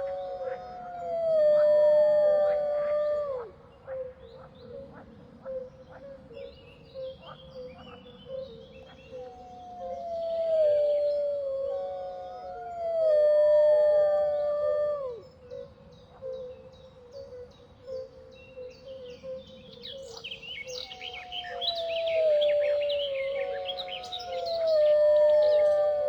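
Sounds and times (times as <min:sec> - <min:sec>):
wolves howling: 0:00.0 - 0:03.5, 0:20.8 - 0:26.0
birds chirping: 0:19.6 - 0:26.0.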